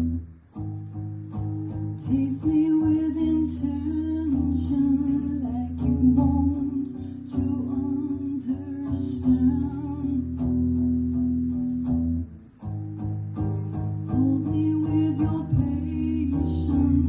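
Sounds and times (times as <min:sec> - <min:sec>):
plucked acoustic guitar: 0:00.0 - 0:17.0.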